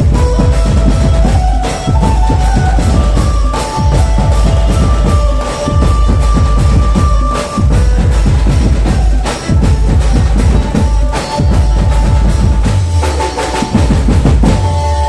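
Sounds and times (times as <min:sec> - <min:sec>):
fast dense drumming: 0:00.0 - 0:15.0
held melody notes: 0:00.0 - 0:15.0.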